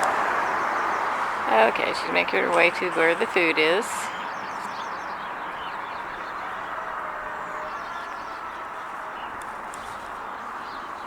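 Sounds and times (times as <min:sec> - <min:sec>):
outdoor background noise: 0:00.0 - 0:11.0
faint songbird chirps: 0:03.9 - 0:11.0.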